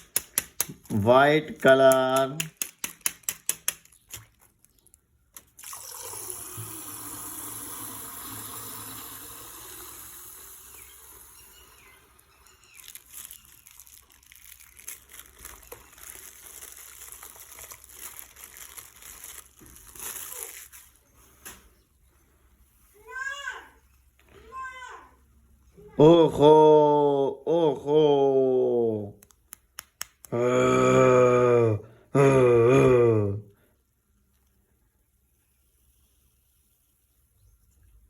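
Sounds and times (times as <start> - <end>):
wet plastic bag crinkling: 1.5 - 5.7, 12.4 - 21.2
water splashing from bag: 12.7 - 21.0.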